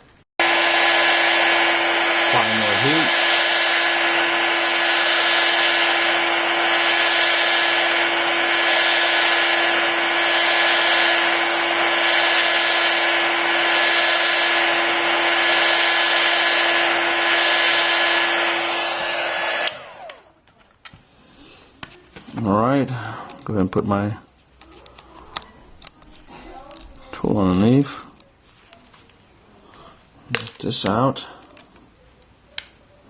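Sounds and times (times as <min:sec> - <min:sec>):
heat gun blowing: 0:00.4 - 0:20.3.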